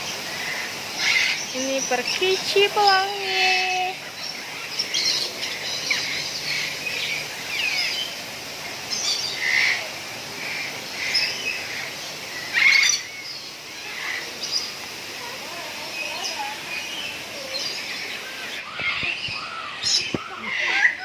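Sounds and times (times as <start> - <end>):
lorikeets chattering and screeching: 0.0 - 21.0.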